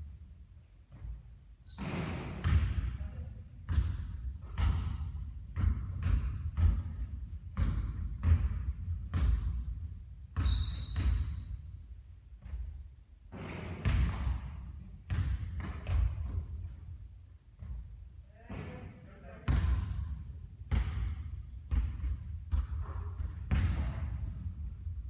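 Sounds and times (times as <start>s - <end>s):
basketballs bouncing on court: 0.9s - 11.8s, 12.4s - 17.0s, 17.6s - 25.0s
short high squeaks: 10.4s - 11.0s.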